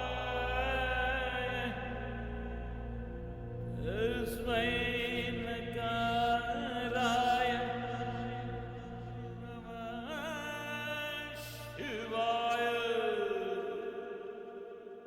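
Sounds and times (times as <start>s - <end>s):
steady low drone: 0.0s - 12.5s
wordless chant-like vocal: 0.0s - 15.0s.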